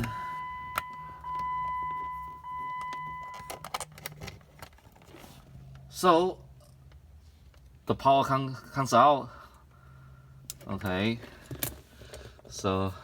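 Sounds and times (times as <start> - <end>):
electronic warning beep: 0.0 - 3.6.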